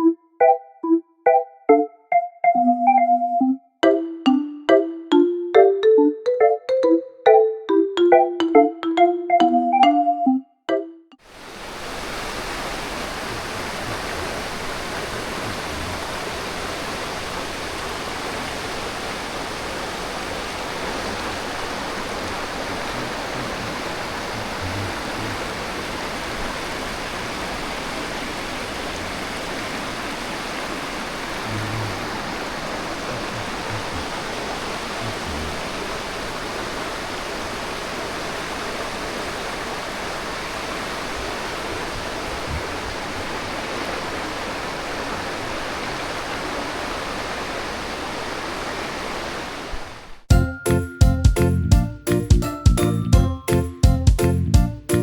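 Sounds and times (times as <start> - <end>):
stream water rushing: 11.2 - 50.3.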